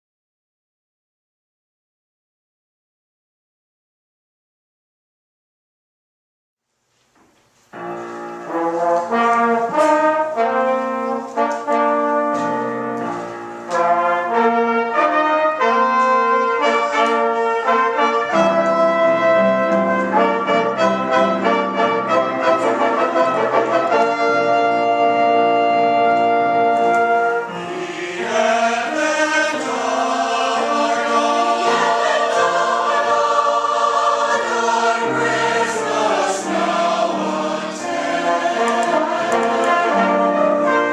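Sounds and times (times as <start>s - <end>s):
mixed choir singing: 27.5s - 40.9s.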